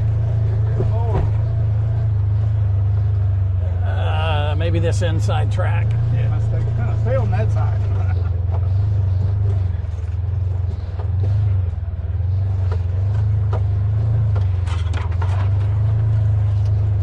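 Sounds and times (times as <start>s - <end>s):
buggy engine running at low revs: 0.0s - 17.0s
knocks and clatters over rough ground: 7.2s - 17.0s.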